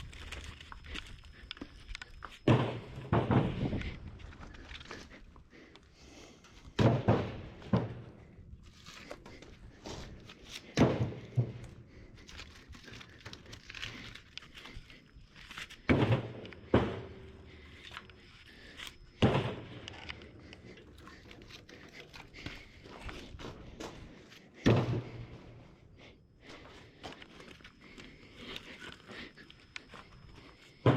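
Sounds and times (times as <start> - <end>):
firewood thudding down: 2.4 - 3.8, 6.8 - 8.0.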